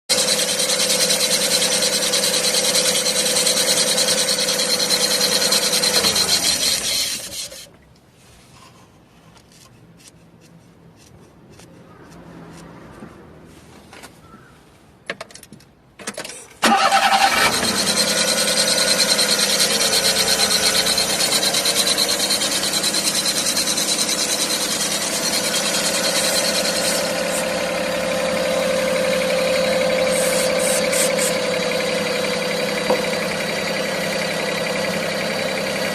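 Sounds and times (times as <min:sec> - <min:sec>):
engine running with belt whine: 0:00.1 - 0:07.6, 0:16.6 - 0:35.9.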